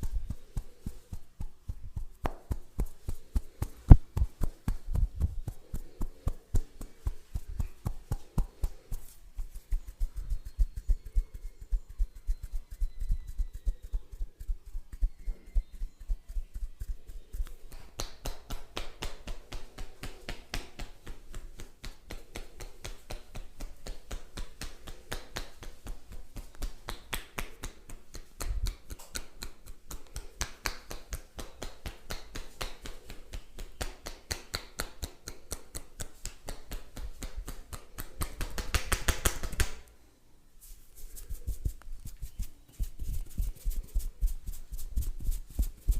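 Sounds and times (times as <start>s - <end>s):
rapid hand snaps and clicks: 0.0s - 9.1s, 16.6s - 40.0s.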